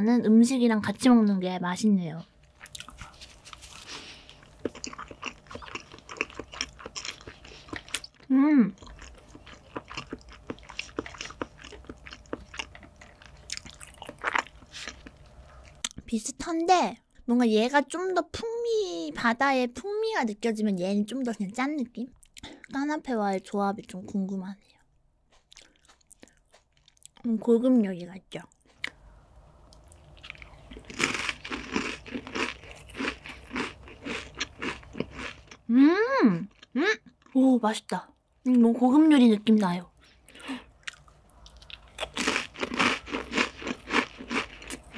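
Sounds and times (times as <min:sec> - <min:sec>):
person chewing: 0:02.4 - 0:16.0, 0:25.3 - 0:27.2, 0:29.7 - 0:35.7, 0:40.2 - 0:44.9.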